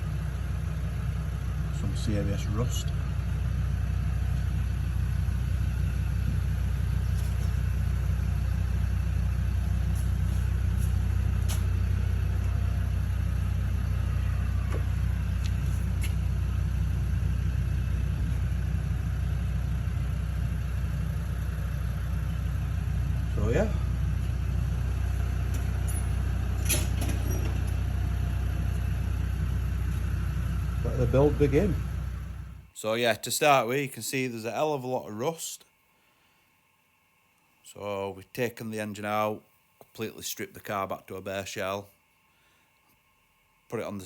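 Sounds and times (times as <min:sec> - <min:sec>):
low engine rumble: 0:00.0 - 0:32.8.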